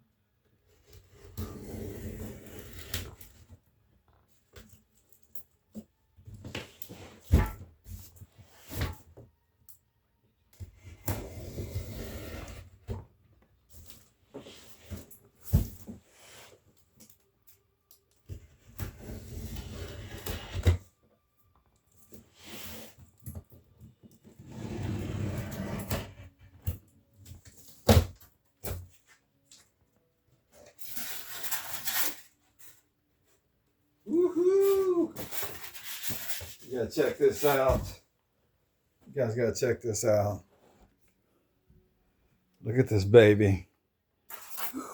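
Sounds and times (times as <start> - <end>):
packing rustling and scraping: 30.5 - 32.8, 35.2 - 38.0.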